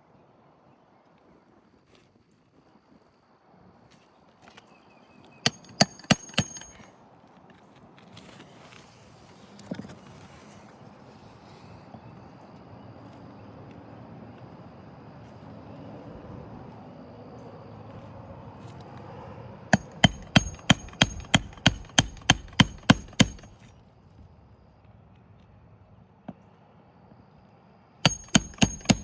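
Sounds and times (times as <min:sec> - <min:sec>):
hammer blows: 0:05.5 - 0:06.9, 0:19.8 - 0:23.7, 0:28.1 - 0:29.0.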